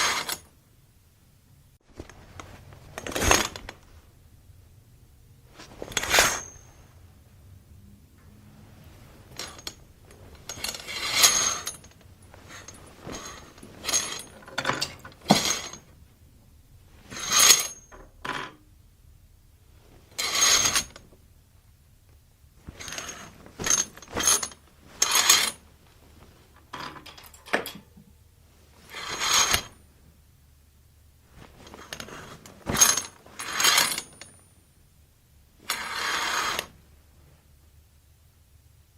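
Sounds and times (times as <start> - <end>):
curtain swishing on rod: 5.5 - 6.8, 10.2 - 14.4, 20.1 - 21.0, 22.6 - 26.6, 28.7 - 29.7, 31.3 - 34.1, 35.7 - 36.7
light metallic ring: 5.9 - 7.1.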